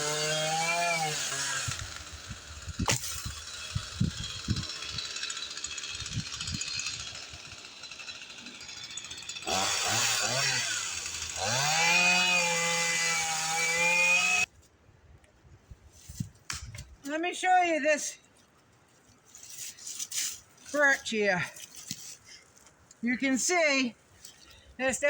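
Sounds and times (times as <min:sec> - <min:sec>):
chainsaw engine revving: 0:00.0 - 0:14.5.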